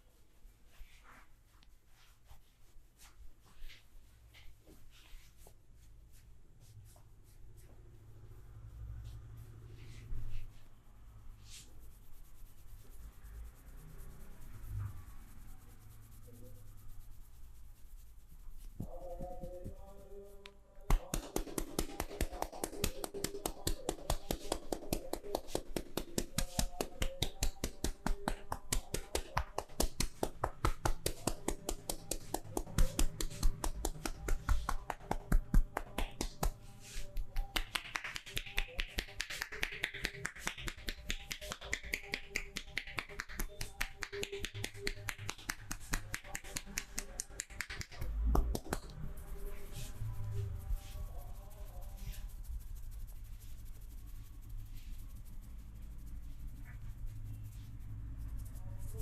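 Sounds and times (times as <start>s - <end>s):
hands slapping in massage: 20.8s - 50.0s.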